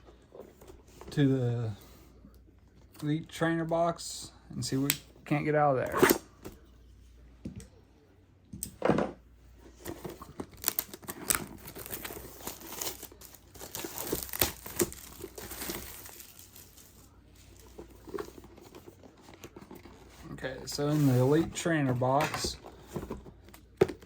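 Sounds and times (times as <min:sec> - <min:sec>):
plastic wrapping tearing and crinkling: 0:10.5 - 0:17.2.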